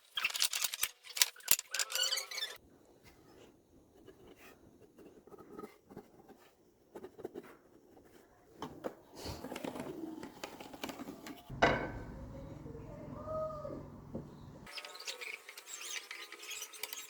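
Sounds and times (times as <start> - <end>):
low steady hum: 11.5 - 14.7.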